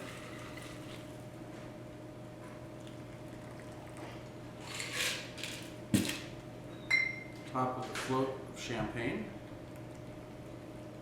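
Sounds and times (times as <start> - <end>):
low electrical hum: 0.0 - 11.0
liquid trickling into glass: 2.8 - 4.1.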